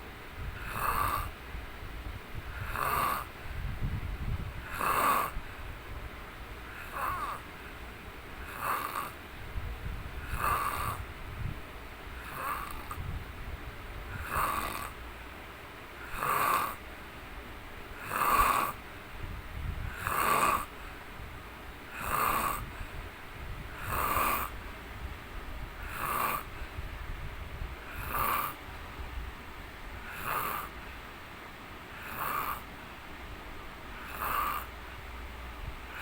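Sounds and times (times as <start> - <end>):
man snoring: 0.6 - 1.4, 2.5 - 3.4, 4.6 - 5.4, 6.7 - 7.4, 8.4 - 9.2, 10.2 - 11.0, 12.2 - 13.0, 14.1 - 15.0, 16.0 - 16.8, 18.0 - 18.8, 19.9 - 20.7, 21.9 - 22.9, 23.7 - 24.6, 25.8 - 26.5, 27.9 - 28.6, 30.0 - 30.7, 32.0 - 32.7, 34.0 - 34.7.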